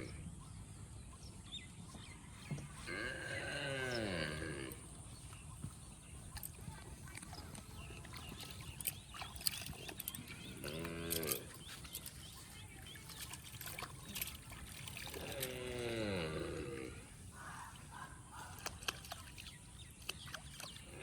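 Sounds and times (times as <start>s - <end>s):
cow mooing: 2.8s - 4.9s, 10.5s - 11.6s, 15.1s - 17.1s.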